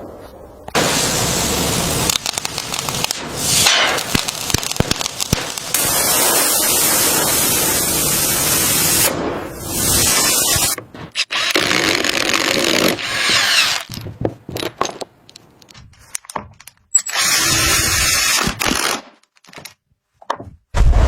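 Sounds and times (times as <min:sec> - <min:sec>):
clicks and knocks: 0:13.8 - 0:17.1.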